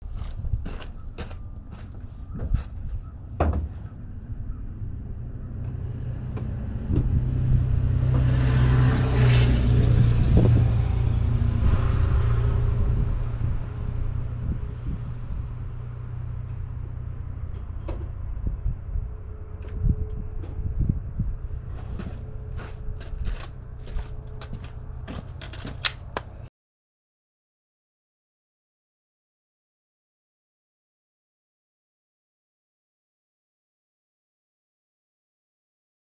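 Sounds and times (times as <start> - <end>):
low vehicle rumble: 0.0 - 26.5
sharp clicks: 25.4 - 26.5.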